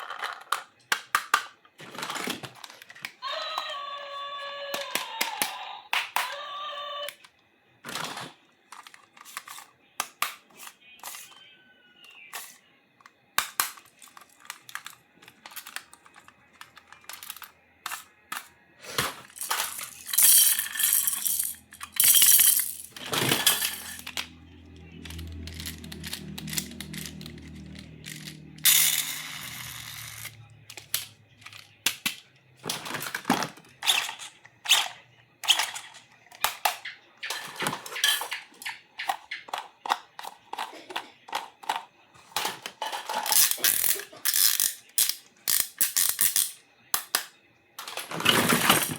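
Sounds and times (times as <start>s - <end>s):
plastic toy pieces clicking: 0.0s - 3.1s, 12.3s - 18.5s, 19.3s - 24.3s, 25.0s - 41.9s, 43.1s - 48.9s.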